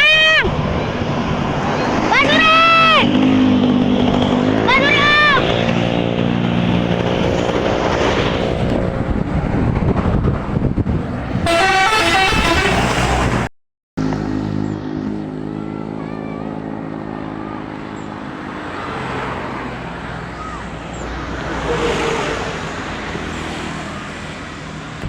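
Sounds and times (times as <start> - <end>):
bus engine running: 0.0 - 25.0
multi-tone bus horn melody: 11.4 - 13.5.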